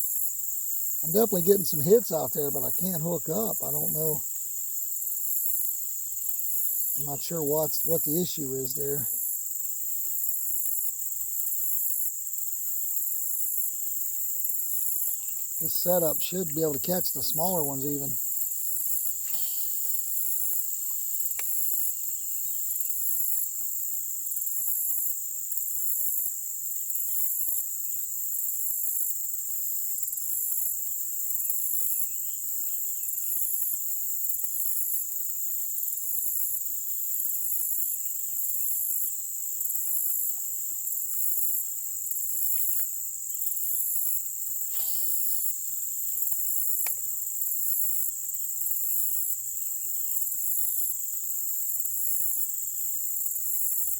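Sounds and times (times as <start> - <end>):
insect chorus trilling: 0.0 - 53.9
faint ticks: 13.3 - 22.0, 38.5 - 49.4.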